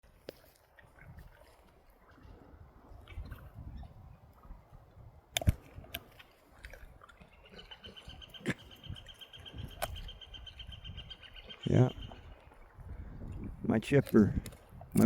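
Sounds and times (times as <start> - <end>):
wood snapping: 5.3 - 6.0.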